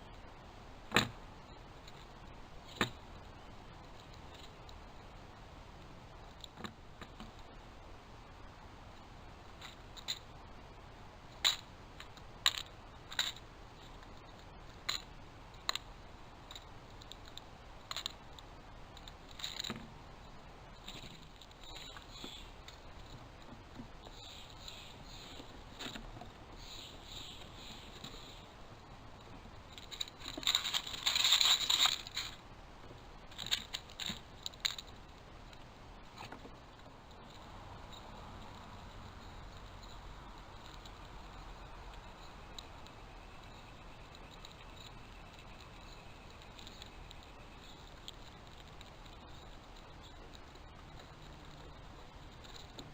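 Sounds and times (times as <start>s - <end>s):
faint steady hiss: 0.0s - 52.9s
animals scrabbling and scraping: 18.9s - 52.9s.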